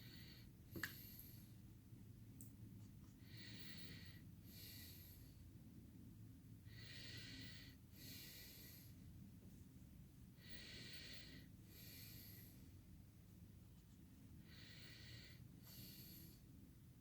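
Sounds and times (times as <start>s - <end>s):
person breathing slowly: 3.2s - 5.5s, 6.7s - 9.1s, 10.4s - 12.8s, 14.4s - 16.6s.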